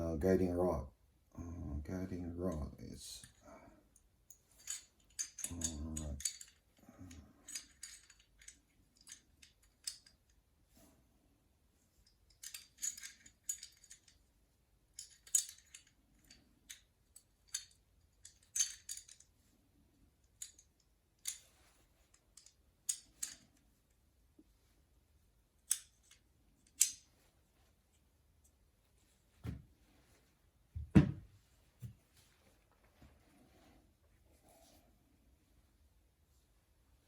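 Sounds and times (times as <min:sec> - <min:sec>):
pistol parts clicking: 0:04.0 - 0:10.4, 0:12.0 - 0:14.3, 0:14.9 - 0:19.3, 0:22.1 - 0:23.6, 0:25.6 - 0:27.1.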